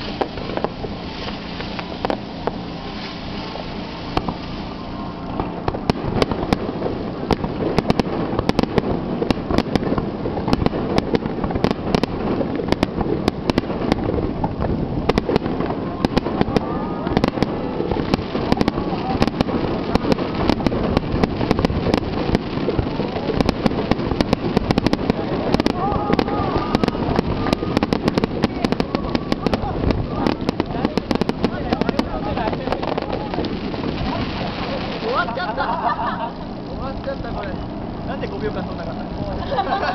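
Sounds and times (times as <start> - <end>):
fireworks bangs and crackles: 0.0 - 39.9.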